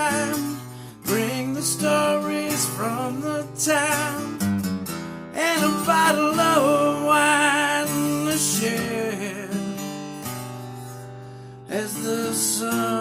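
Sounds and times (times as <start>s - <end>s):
person singing with vibrato: 0.0s - 4.4s, 5.4s - 9.7s, 11.7s - 13.0s
acoustic guitar strumming chords: 0.0s - 13.0s.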